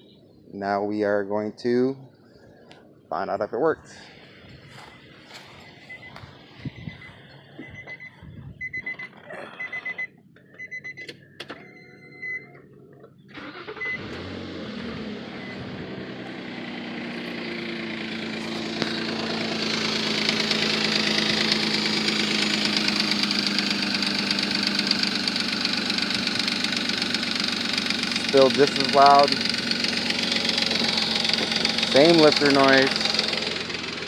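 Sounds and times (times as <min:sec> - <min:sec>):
car engine starting and idling: 0:04.7 - 0:34.0
car warning chime beeping: 0:07.6 - 0:12.6, 0:13.5 - 0:14.2
engine lifter ticking: 0:16.2 - 0:34.0.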